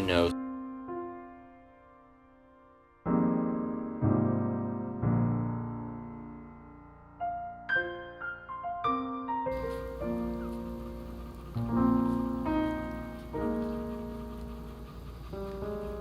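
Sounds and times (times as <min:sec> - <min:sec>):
soft piano music: 0:00.0 - 0:16.0
rain-like hiss: 0:09.5 - 0:16.0.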